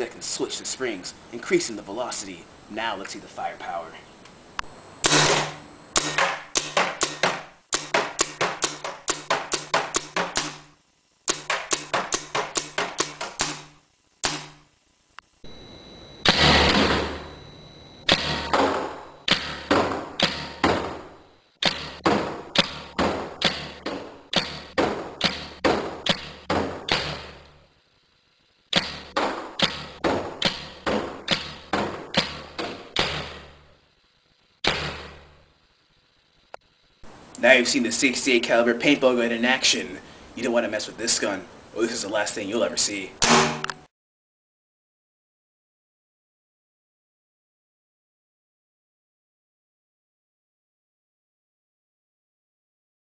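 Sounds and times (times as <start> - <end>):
paintball marker rapid shots: 5.0 - 14.6, 19.3 - 20.9, 21.6 - 27.5, 28.7 - 33.6, 34.6 - 35.4, 43.2 - 43.7.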